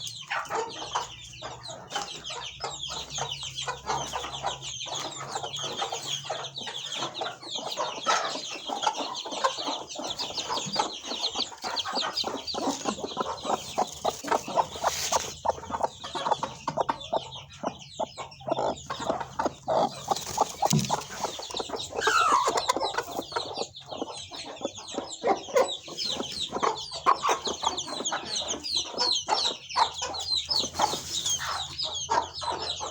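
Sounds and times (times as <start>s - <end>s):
chickens clucking: 0.0s - 32.9s.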